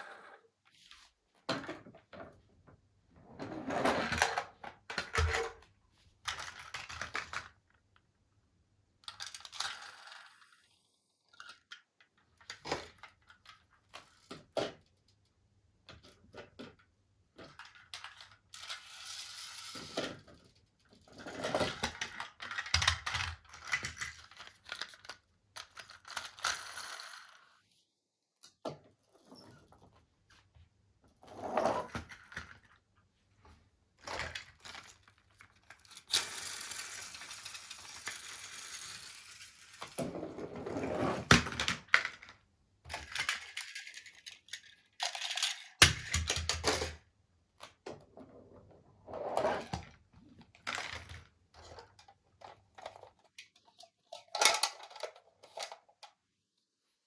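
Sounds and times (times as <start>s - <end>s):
plastic toys clattering: 4.0s - 7.7s, 9.0s - 10.6s, 15.9s - 20.6s, 21.6s - 27.6s, 34.0s - 40.1s, 41.2s - 47.8s, 49.6s - 56.2s.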